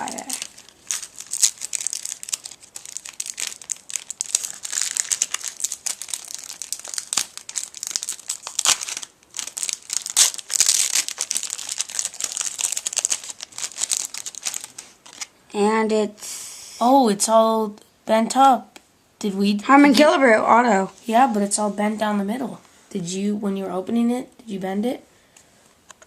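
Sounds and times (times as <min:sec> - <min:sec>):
plastic packaging crinkling and tearing: 0:00.0 - 0:15.4.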